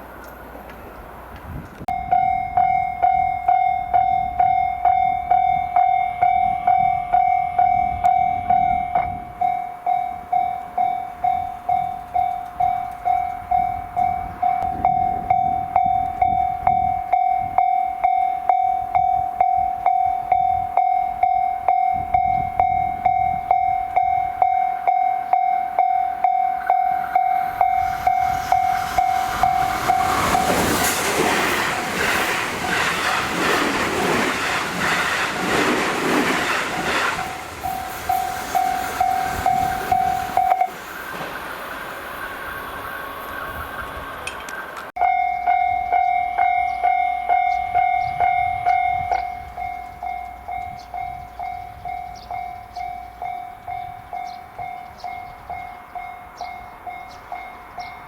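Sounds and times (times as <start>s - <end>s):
train rushing past: 25.7s - 58.0s
level crossing bell dinging: 37.2s - 40.8s, 45.0s - 57.7s.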